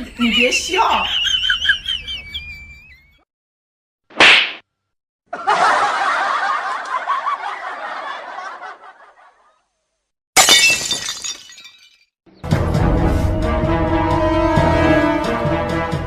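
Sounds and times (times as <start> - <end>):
group laughter: 0.0 - 3.2, 5.3 - 9.7
glass breaking: 10.4 - 12.1.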